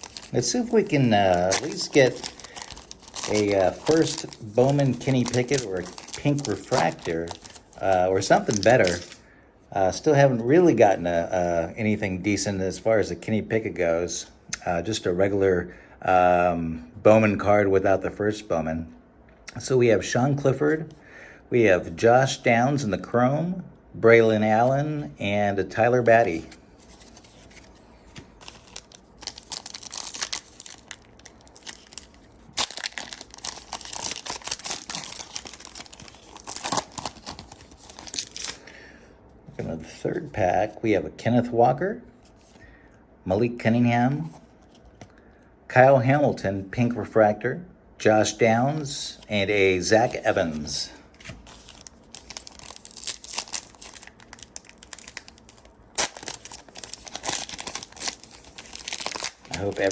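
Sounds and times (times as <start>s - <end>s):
card pack wrapper tearing: 0.0s - 9.2s, 28.4s - 38.6s, 51.2s - 59.9s.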